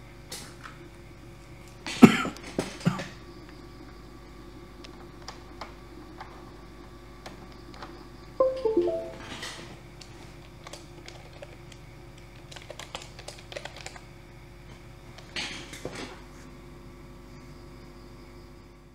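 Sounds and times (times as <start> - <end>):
falling electronic tones: 8.4 - 9.2.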